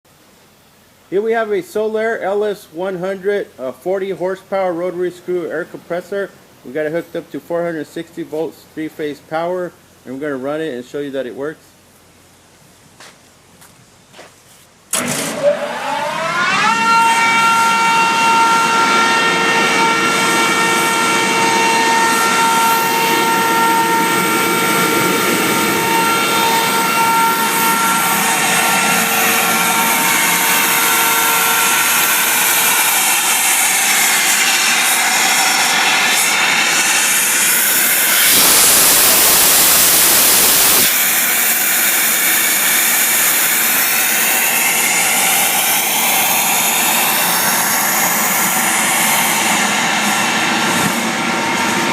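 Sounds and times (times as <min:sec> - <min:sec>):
air compressor running: 0:14.9 - 0:51.9
loud air hiss: 0:16.9 - 0:51.9.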